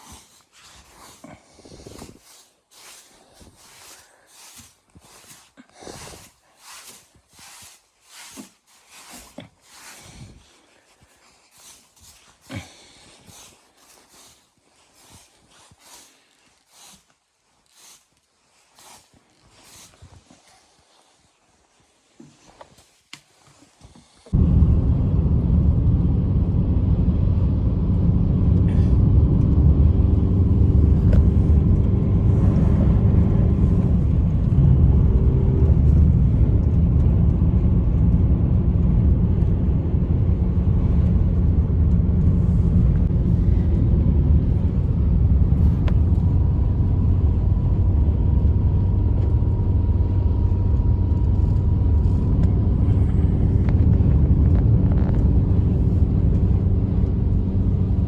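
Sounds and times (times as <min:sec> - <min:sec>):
blizzard wind roaring: 0:24.4 - 0:58.0.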